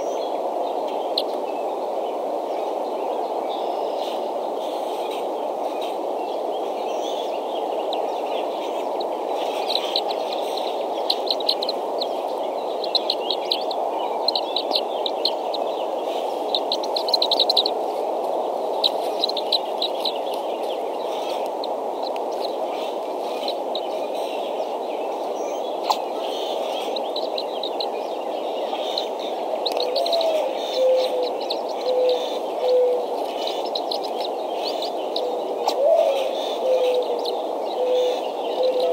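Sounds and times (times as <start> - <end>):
steady background hiss: 0.0 - 38.9
eaglets peeping: 4.0 - 38.9
low dove-like coo: 29.8 - 33.6, 35.0 - 38.9.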